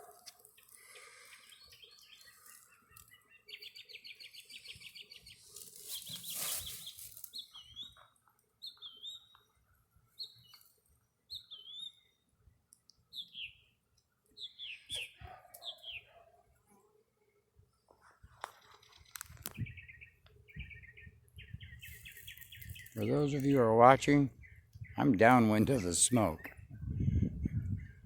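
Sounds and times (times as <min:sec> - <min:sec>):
songbird trill: 0:00.0 - 0:16.3, 0:17.7 - 0:28.0
sharply falling bird chirps: 0:00.4 - 0:08.1, 0:18.4 - 0:23.6.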